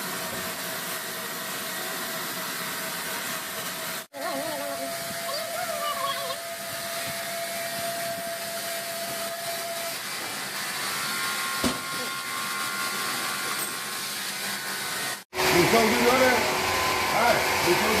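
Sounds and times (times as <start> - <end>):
power tool running: 0.0 - 18.0.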